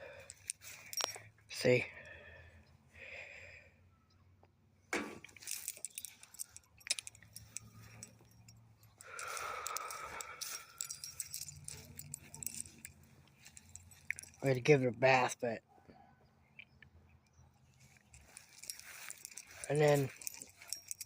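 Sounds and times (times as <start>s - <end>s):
light jangling and clinking: 0.0s - 2.7s, 5.2s - 15.5s, 17.2s - 21.0s
small clicks and rattles: 0.2s - 1.8s, 5.2s - 14.8s, 17.2s - 21.0s.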